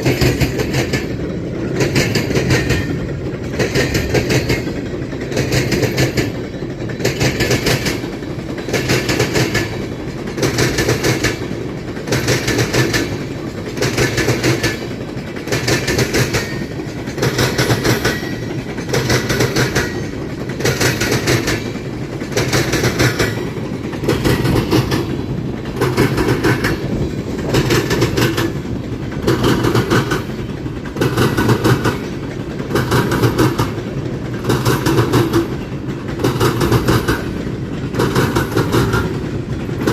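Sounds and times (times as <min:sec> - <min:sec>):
steady train rumble: 0:00.0 - 0:39.9
train wheels clattering over rail joints: 0:00.0 - 0:39.9.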